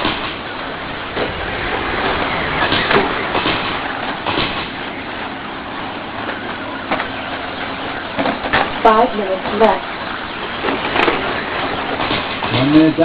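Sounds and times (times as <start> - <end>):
rc trucks racing on dirt: 0.6 - 4.2, 10.6 - 13.0.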